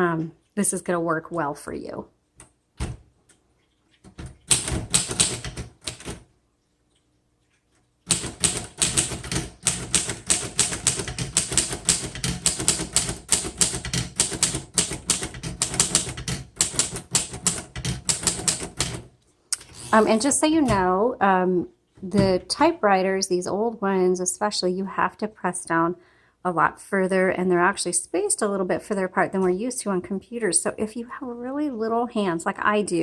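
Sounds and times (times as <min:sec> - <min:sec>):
manual typewriter typing: 0:04.2 - 0:06.3, 0:08.1 - 0:19.1.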